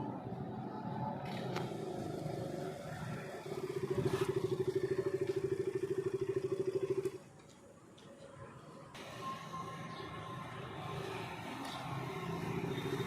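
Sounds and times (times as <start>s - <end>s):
motorcycle engine pulsing: 3.0s - 7.3s.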